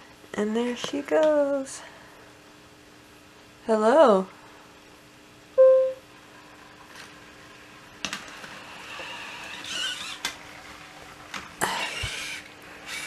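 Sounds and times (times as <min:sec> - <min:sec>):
robot dog motors whirring: 0:09.4 - 0:10.4, 0:11.7 - 0:13.0.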